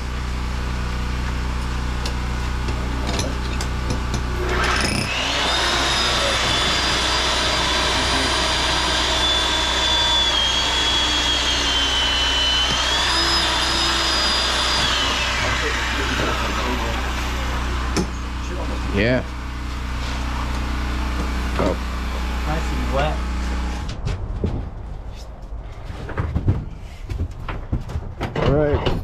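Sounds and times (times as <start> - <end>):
generator humming: 0.0 - 25.9
electric motor whine: 4.2 - 24.0.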